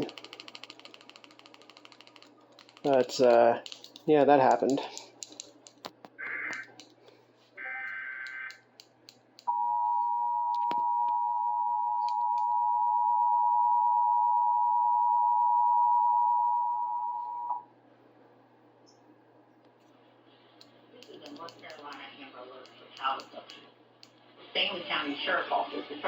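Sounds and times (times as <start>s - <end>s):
keyboard clicks: 0.0s - 7.0s, 7.8s - 9.5s, 20.6s - 24.2s.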